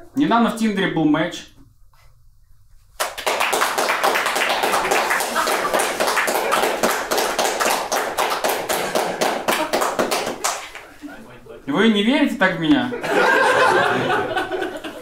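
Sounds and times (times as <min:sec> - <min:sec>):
audience applauding: 0:03.0 - 0:10.9.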